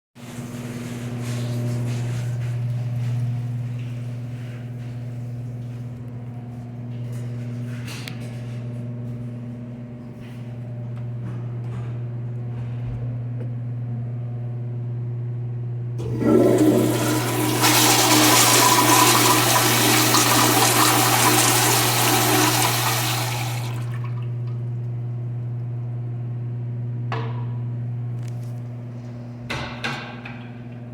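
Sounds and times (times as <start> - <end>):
toilet flushing: 16.0 - 24.7.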